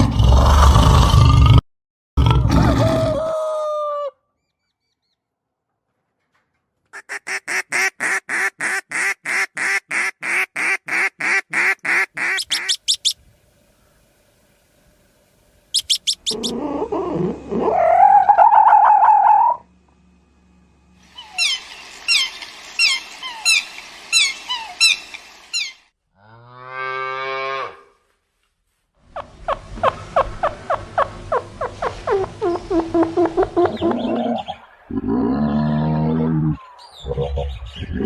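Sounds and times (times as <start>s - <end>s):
animal call rising in pitch: 2.3s - 4.2s, 16.2s - 19.7s
rapid repeated animal calls: 11.6s - 13.2s, 15.7s - 19.6s.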